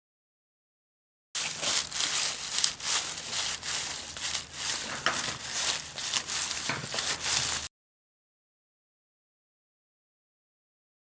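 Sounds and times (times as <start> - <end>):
crinkling and crunching: 1.4 - 7.7.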